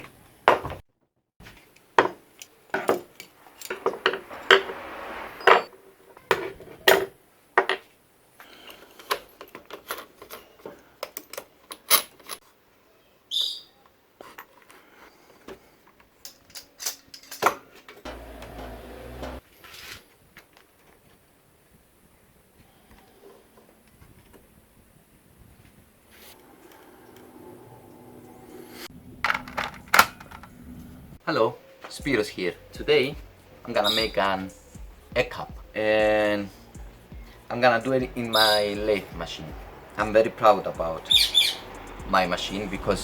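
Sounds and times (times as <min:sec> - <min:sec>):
brief high squeak: 0:03.8 - 0:05.7.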